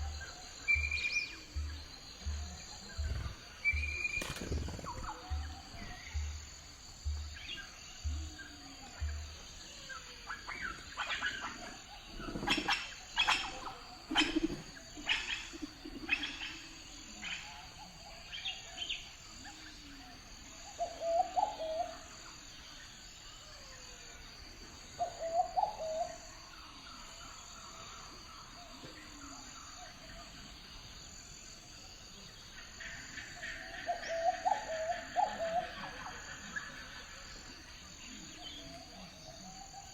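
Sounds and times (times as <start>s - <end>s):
birds chirping: 0.0s - 20.0s.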